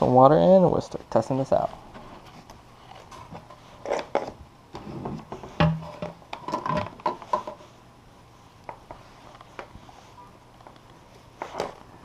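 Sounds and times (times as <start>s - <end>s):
plastic parts knocking and clattering: 5.0s - 7.6s.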